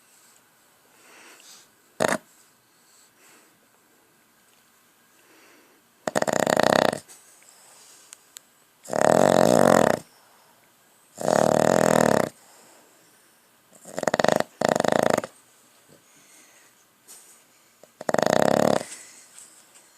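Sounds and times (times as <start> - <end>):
loud rattling snores: 2.0 - 2.2, 6.0 - 7.1, 8.8 - 10.1, 11.2 - 12.4, 13.8 - 15.4, 18.0 - 19.0.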